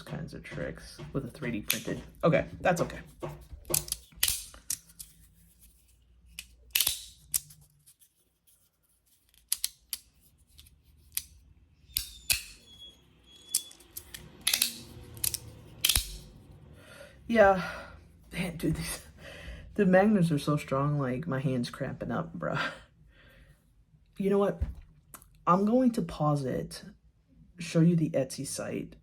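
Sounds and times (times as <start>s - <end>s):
magnetic fidget slider clicking: 6.4s - 7.5s, 13.5s - 16.3s.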